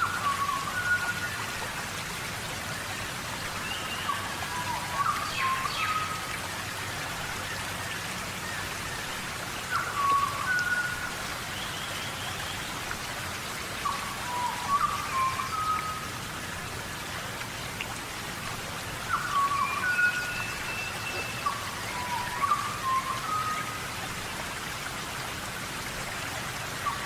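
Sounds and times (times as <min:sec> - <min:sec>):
steady rain: 0:00.0 - 0:27.0
bird whistling call: 0:19.1 - 0:23.6.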